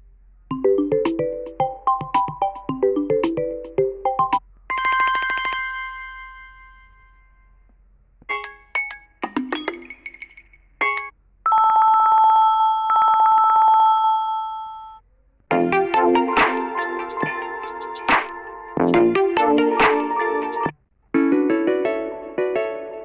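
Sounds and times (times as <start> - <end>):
electronic ringtone melody: 0.5 - 5.1, 15.5 - 20.7.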